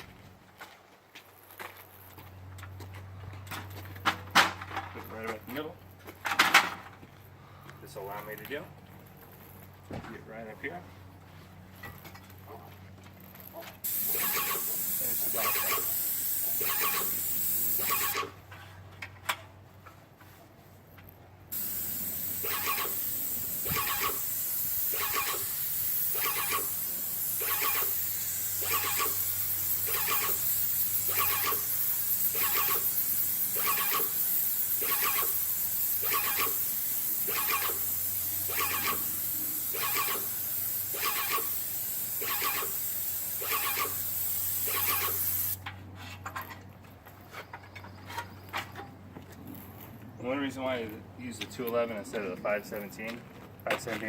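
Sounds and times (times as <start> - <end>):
paint sprayer hissing: 13.8 - 18.4, 21.5 - 45.6
piston pump pulsing: 13.9 - 15.9, 16.6 - 18.4, 21.6 - 34.2, 34.8 - 44.0.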